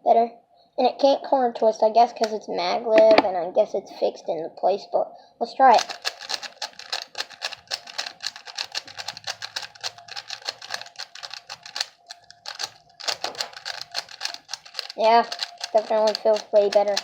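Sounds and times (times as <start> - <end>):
speed cube plastic clicks: 5.7 - 17.0.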